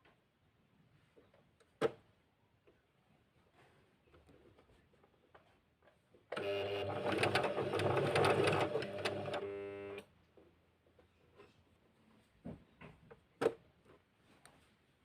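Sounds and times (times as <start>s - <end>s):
sewing machine stitching: 6.3s - 10.0s.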